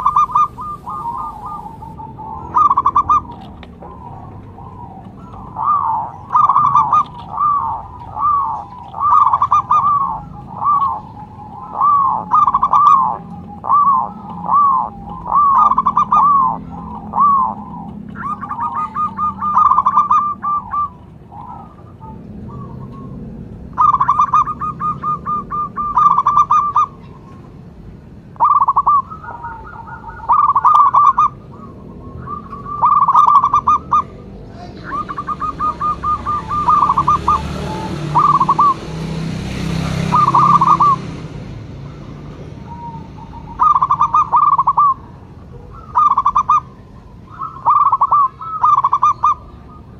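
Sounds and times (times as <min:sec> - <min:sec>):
doves cooing: 0:00.0 - 0:49.9.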